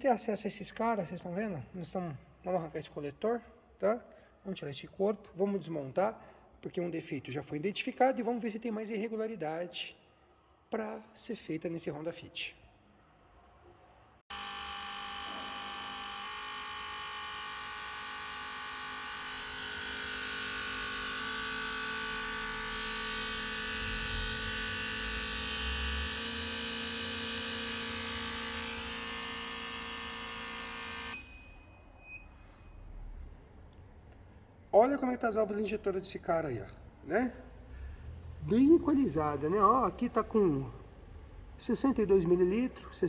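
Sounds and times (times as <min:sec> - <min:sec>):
fuel injectors buzzing: 0:14.3 - 0:31.2.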